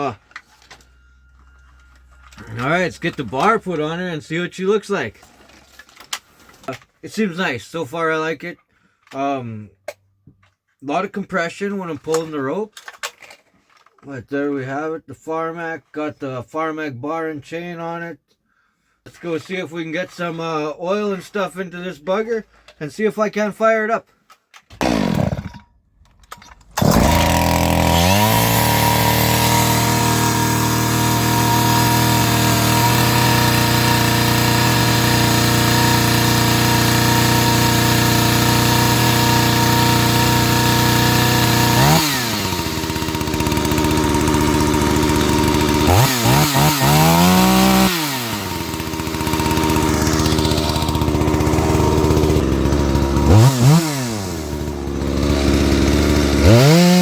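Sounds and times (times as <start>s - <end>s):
chainsaw running at high revs: 2.3s - 3.2s, 24.8s - 25.6s, 26.8s - 57.0s.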